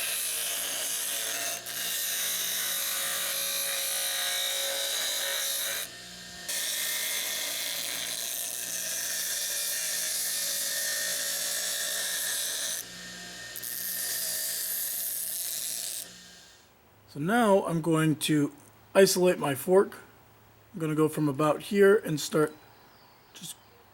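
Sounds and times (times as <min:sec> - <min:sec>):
power grinder grinding steel: 0:00.0 - 0:16.6.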